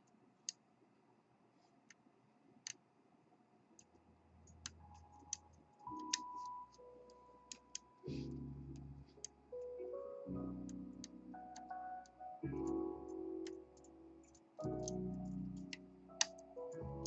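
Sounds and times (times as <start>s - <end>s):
background music: 4.6s - 17.0s.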